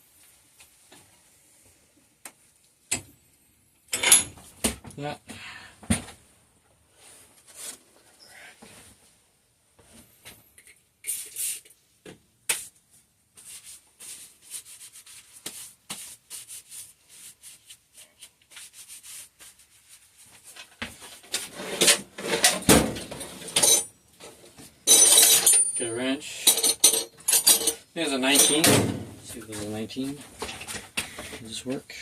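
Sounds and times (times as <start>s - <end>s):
metal tools scraping and clicking: 21.3s - 23.9s, 24.9s - 28.7s
metal parts clattering: 24.9s - 28.7s.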